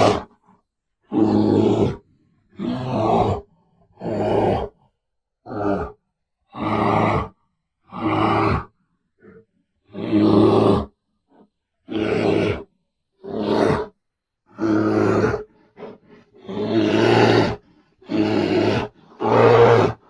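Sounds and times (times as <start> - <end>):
bear roaring: 0.0 - 0.4, 1.1 - 4.8, 5.4 - 11.0, 11.8 - 20.0.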